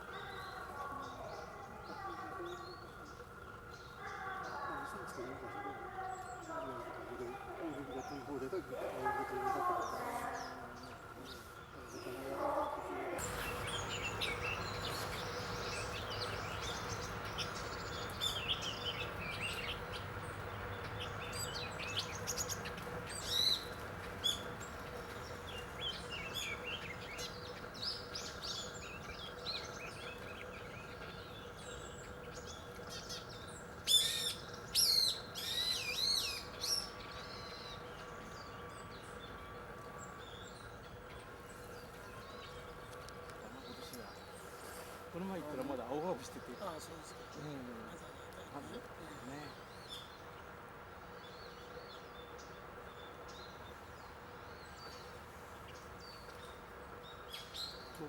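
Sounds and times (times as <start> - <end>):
faint steady hum: 0.0 - 58.0
songbirds chirping: 0.0 - 58.0.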